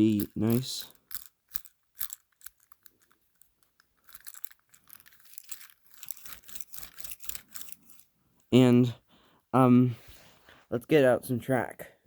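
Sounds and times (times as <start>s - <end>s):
toy engine clicks and rattling: 0.0s - 8.1s.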